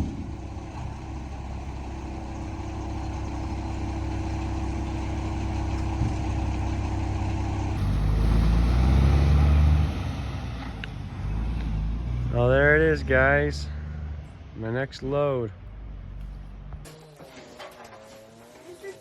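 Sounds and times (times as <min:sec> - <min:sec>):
truck engine running: 0:00.0 - 0:14.6.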